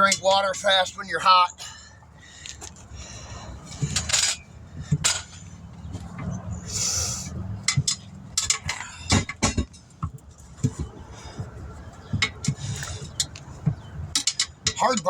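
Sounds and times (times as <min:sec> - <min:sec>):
metal tools clinking: 0:07.6 - 0:10.0, 0:14.2 - 0:15.0.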